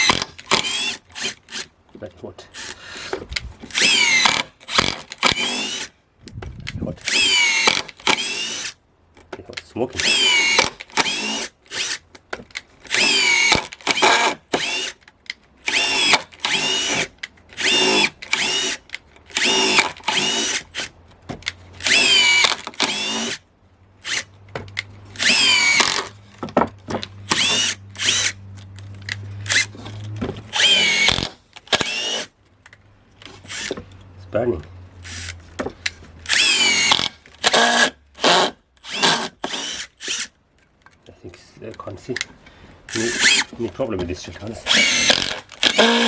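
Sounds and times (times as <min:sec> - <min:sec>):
impact driver bursts: 0:00.0 - 0:01.7, 0:02.6 - 0:05.9, 0:07.1 - 0:08.8, 0:12.9 - 0:15.0, 0:15.7 - 0:20.9, 0:21.8 - 0:23.4, 0:25.2 - 0:26.1, 0:27.3 - 0:28.4, 0:30.5 - 0:32.3, 0:36.2 - 0:40.3, 0:42.9 - 0:43.5, 0:44.7 - 0:46.0.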